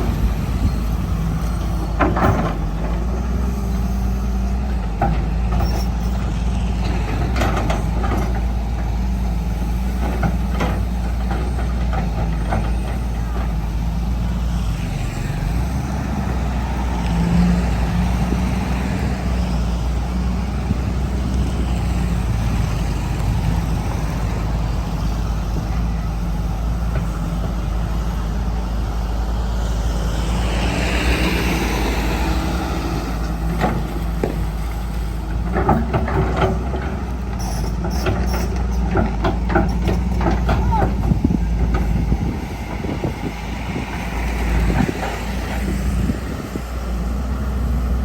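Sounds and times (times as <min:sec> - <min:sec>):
excavator diesel engine running: 0:00.0 - 0:48.0
metal knocks and clanks: 0:35.3 - 0:42.1.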